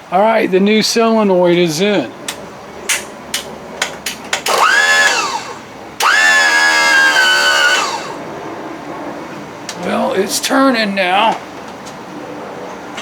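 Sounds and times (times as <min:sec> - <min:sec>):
sharp clicks: 0:02.3 - 0:08.2
starter motor whining: 0:04.3 - 0:08.2.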